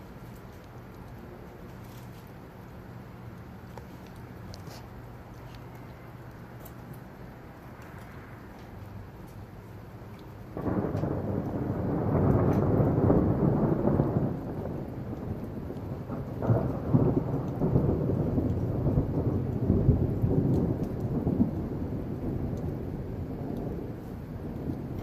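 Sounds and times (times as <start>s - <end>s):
steady rain: 0.0s - 25.0s
thunder rumbling: 2.5s - 25.0s.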